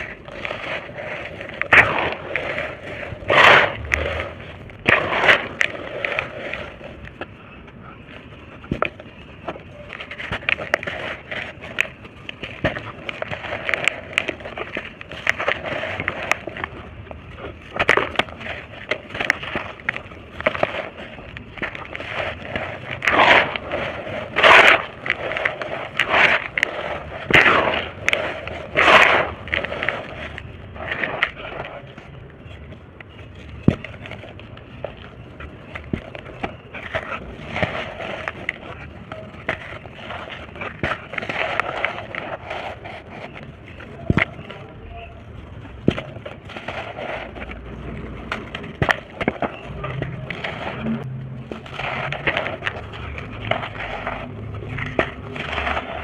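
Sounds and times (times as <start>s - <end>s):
dry brick dirt crunching: 0.0s - 56.0s.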